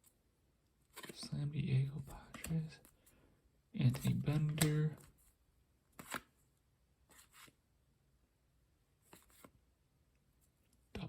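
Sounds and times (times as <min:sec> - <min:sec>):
paper cards rustling: 0:00.8 - 0:01.2, 0:02.0 - 0:03.1, 0:03.9 - 0:06.4, 0:07.1 - 0:07.6, 0:09.0 - 0:09.6.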